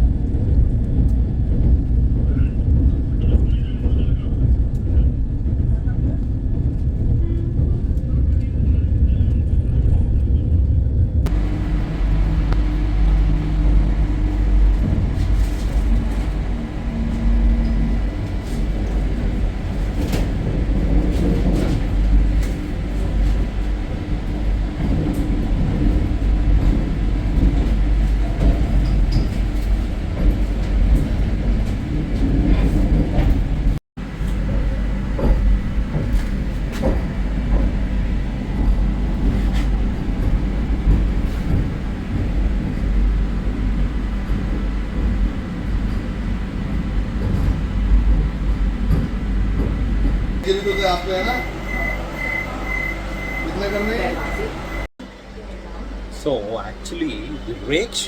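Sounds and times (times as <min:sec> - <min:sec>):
train rumbling on track: 0:00.0 - 0:58.0.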